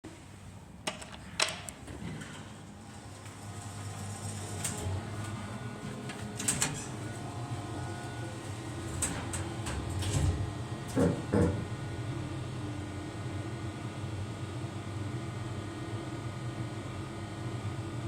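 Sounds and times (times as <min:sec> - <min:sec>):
lift humming: 0:02.0 - 0:12.7.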